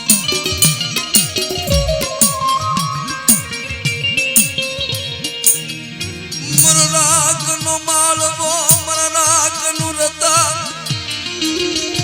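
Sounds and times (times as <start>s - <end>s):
quick folk drum rhythm: 0.0s - 3.6s, 8.7s - 10.6s.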